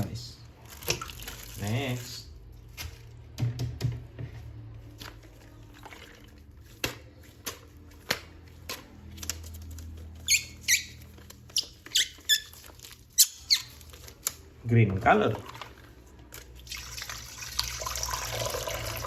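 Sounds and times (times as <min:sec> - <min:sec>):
short high squeaks: 0:10.2 - 0:12.6, 0:13.2 - 0:13.8.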